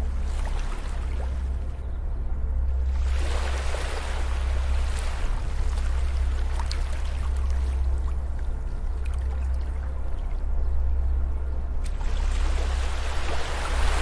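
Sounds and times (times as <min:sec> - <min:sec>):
steady low hum: 0:00.0 - 0:14.0
ocean waves washing onto beach: 0:11.9 - 0:14.0.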